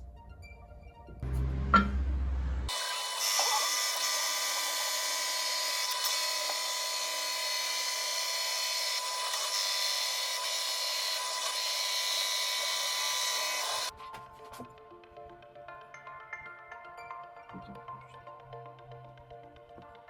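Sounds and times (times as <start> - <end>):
metal cut-off saw cutting: 1.2 - 13.9.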